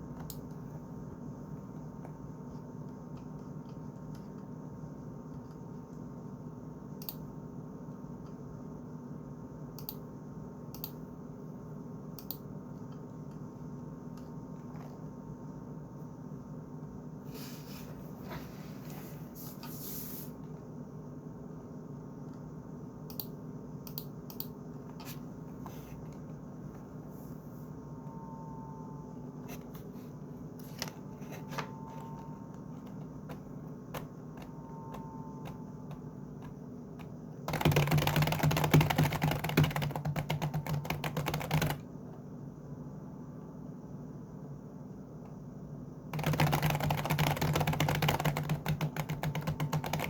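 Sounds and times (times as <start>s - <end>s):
steady low hum: 0.0s - 50.0s
keyboard typing: 30.6s - 41.9s, 46.1s - 50.0s.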